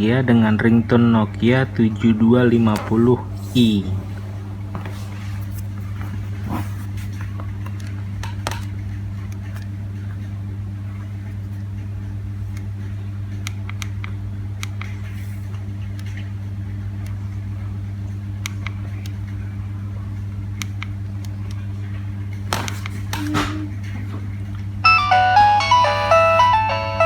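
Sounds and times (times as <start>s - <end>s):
low electrical hum: 0.0s - 27.0s.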